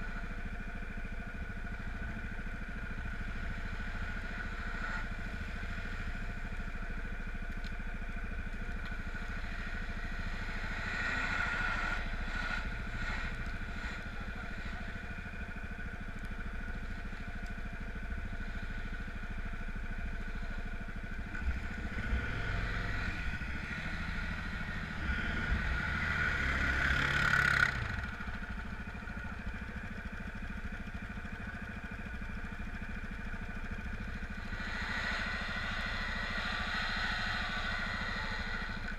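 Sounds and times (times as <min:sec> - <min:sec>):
off-road vehicle engine revving: 0:01.6 - 0:07.6, 0:08.3 - 0:38.9.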